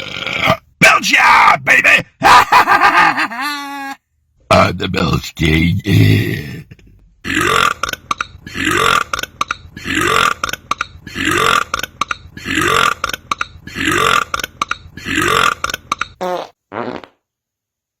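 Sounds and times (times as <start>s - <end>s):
man belching: 0.0s - 0.7s, 5.8s - 16.2s.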